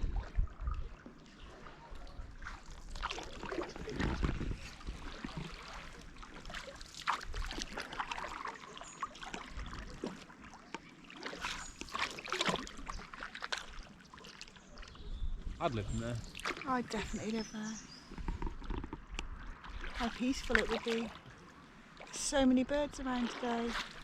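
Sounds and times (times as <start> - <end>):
paddles splashing in water: 0.0 - 24.0
water trickling off paddles: 0.3 - 24.0.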